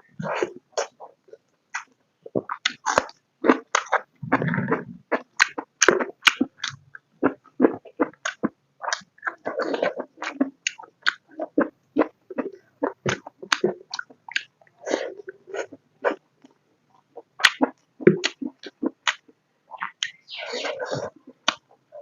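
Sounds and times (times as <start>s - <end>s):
chewing and mouth sounds: 1.7s - 21.6s
breathy noise: 4.2s - 5.1s.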